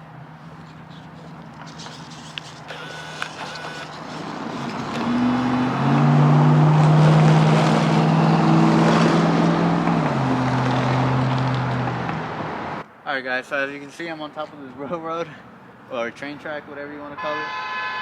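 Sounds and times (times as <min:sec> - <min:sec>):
vehicle passing by: 0:04.3 - 0:12.8.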